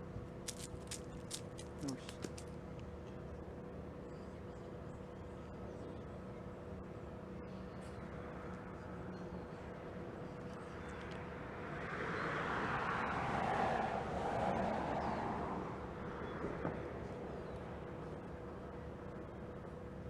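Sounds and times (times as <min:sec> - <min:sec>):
low hum of traffic: 0:00.0 - 0:20.0
vehicle passing by: 0:11.2 - 0:17.3.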